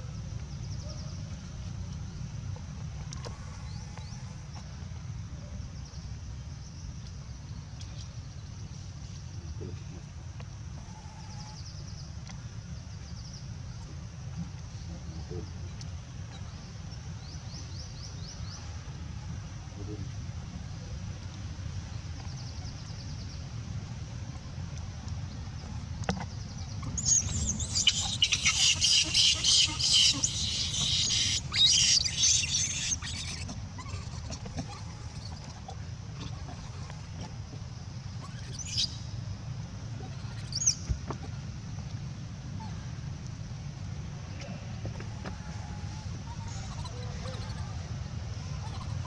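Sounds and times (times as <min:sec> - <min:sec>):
steady low rumble: 0:00.0 - 0:49.0
insects buzzing: 0:26.1 - 0:35.5
faint high chirping: 0:26.9 - 0:34.0
baby monkey shrieking: 0:27.0 - 0:35.6, 0:40.1 - 0:40.8, 0:46.4 - 0:47.8, 0:48.5 - 0:49.0.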